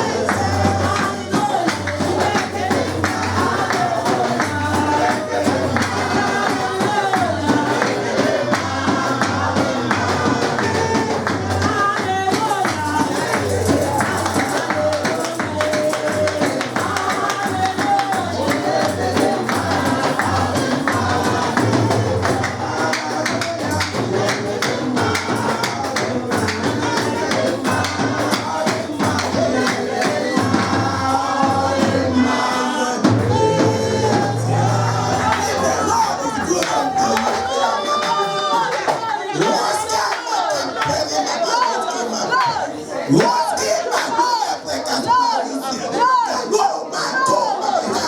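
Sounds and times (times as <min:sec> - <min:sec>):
shaken percussion: 0:00.0 - 0:46.0
voices singing: 0:00.0 - 0:48.0
steady bass beat: 0:33.1 - 0:37.1.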